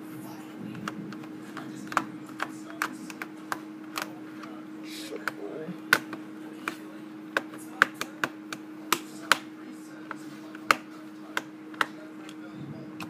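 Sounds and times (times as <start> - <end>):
steady low hum: 0.0 - 13.0
plastic case clicks and taps: 0.8 - 4.1.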